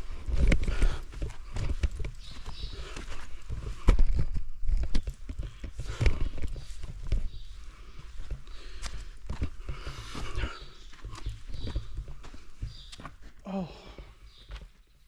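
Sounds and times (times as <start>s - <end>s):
footsteps on rock and stones: 0.0s - 15.0s.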